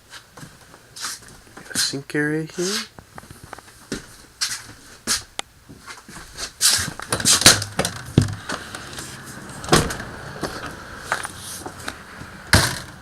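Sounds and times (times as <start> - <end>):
footstep knocks and clunks: 3.1 - 4.2, 5.2 - 13.0.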